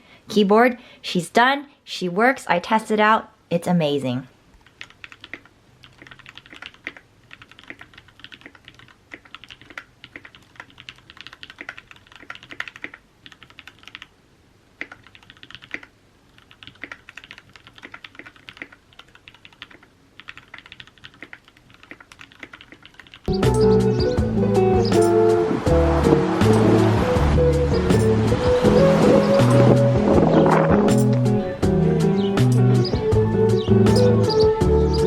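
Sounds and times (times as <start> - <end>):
mechanical keyboard typing: 4.6 - 14.1, 14.8 - 23.4.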